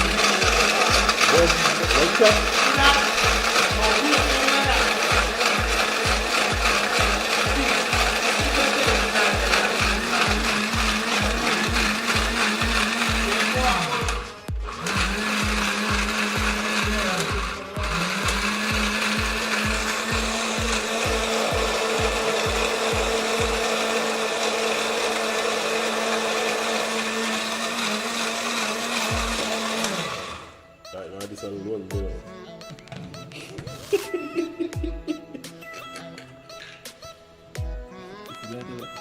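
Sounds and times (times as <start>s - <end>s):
electric blender motor running: 0.0s - 30.7s.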